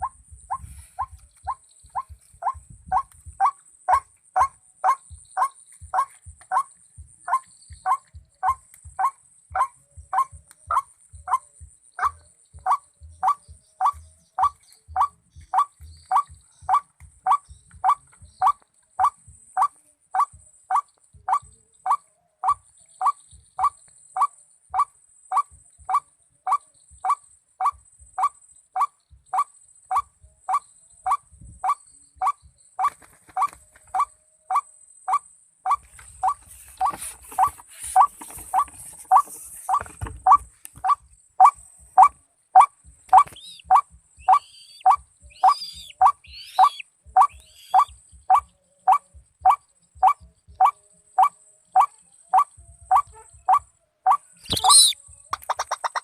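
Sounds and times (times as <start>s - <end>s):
waterhen call repeated note: 35.7s - 55.7s.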